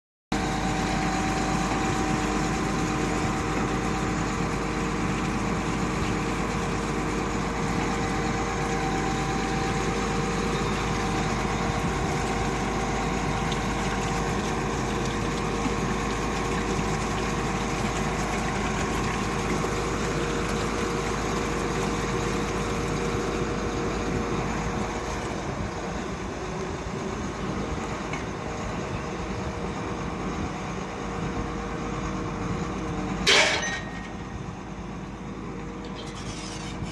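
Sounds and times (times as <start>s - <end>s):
drilling rig engine rumble: 0.4s - 36.9s
steady whine: 0.4s - 36.9s.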